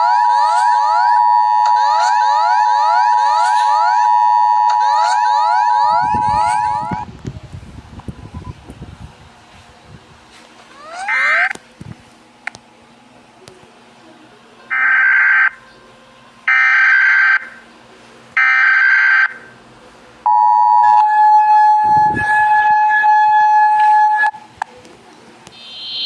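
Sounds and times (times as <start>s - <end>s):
screechy digital data bursts: 25.6s - 26.0s
two-tone attention signal: 25.6s - 26.0s.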